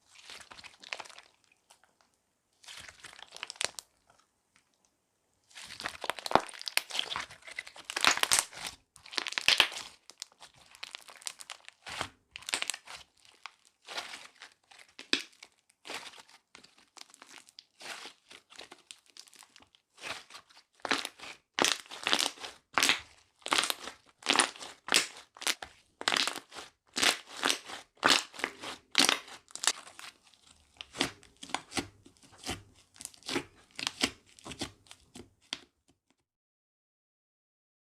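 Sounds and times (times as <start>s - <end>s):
slime crackling pops: 5.7s - 9.8s.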